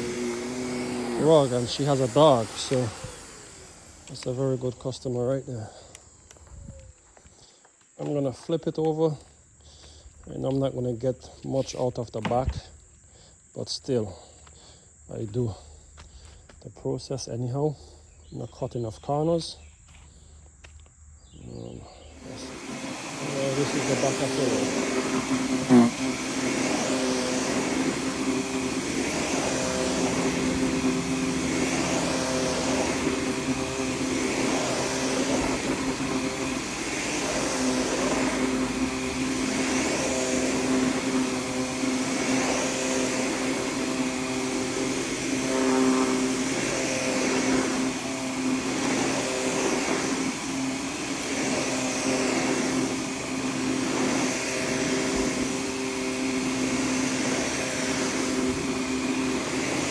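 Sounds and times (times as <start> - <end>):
vacuum cleaner running: 0.0 - 7.3, 20.7 - 59.9.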